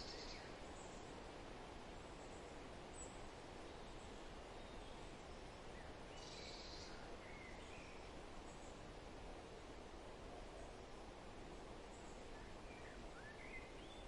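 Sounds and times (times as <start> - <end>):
soft bird chirps: 0.0 - 1.2, 2.0 - 8.8, 11.9 - 14.0
wind in trees: 0.0 - 14.0.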